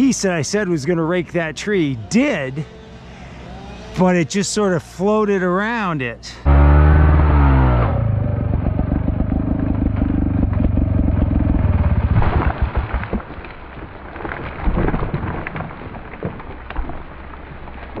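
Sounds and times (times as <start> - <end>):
chainsaw engine idling: 8.0 - 12.0
sharp knocks and cracks: 11.9 - 18.0.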